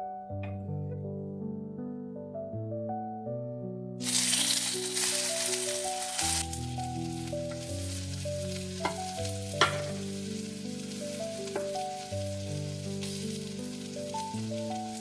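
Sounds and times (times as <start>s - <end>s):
gentle background melody: 0.0s - 15.0s
food sizzling in a frying pan: 4.0s - 15.0s
utensil clicking against pan: 8.8s - 10.2s, 11.3s - 12.0s.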